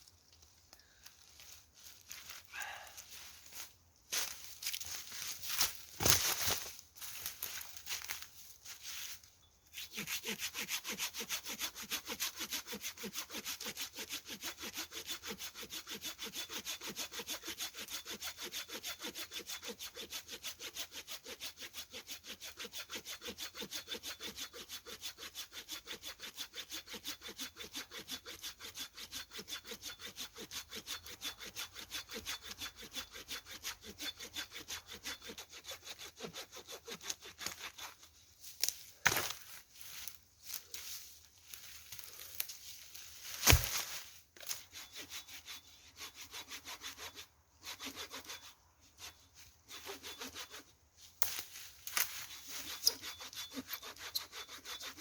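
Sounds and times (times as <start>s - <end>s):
hand saw cutting wood: 9.8s - 38.1s, 42.0s - 55.0s.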